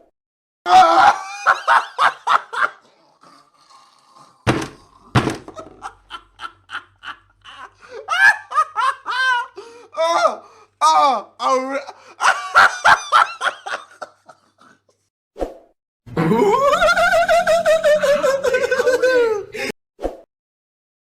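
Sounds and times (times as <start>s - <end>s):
belly laughter: 0.7s - 3.7s, 4.5s - 10.4s, 11.4s - 15.1s, 16.2s - 19.7s.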